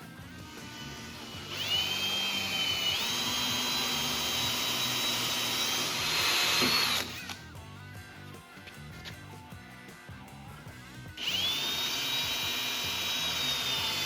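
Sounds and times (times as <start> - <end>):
electric drill motor whine: 0.2 - 7.5, 11.2 - 14.0.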